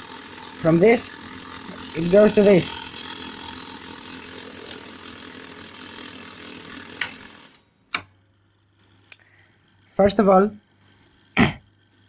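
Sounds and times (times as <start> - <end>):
typewriter motor whirring: 0.0 - 8.0.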